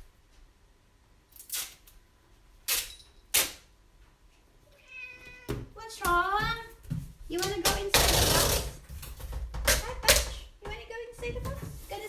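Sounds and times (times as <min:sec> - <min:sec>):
packing tape pulled off roll: 0:01.3 - 0:02.0, 0:07.9 - 0:08.9
cat meowing: 0:04.7 - 0:05.6.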